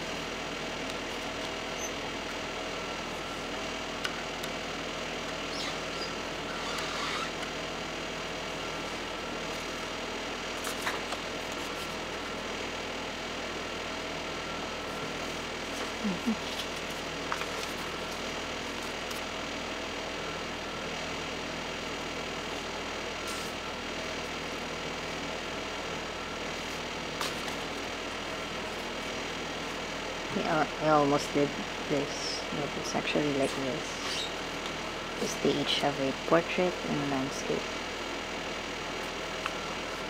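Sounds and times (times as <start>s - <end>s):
steady mechanical hum: 0.0s - 40.0s
paper items being handled: 15.7s - 19.3s.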